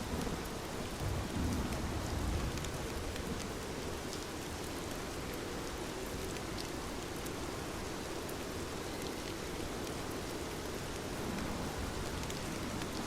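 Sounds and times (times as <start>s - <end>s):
steady rain: 0.0s - 13.0s.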